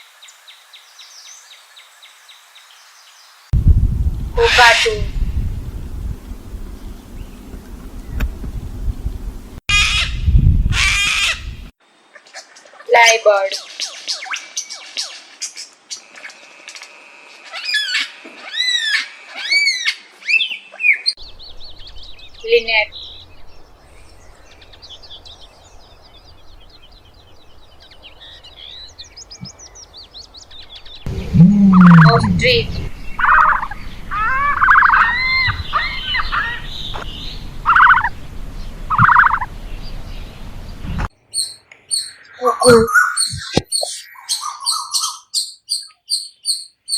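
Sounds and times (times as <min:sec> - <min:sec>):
lyrebird calling: 0:04.4 - 0:05.1, 0:31.1 - 0:46.9.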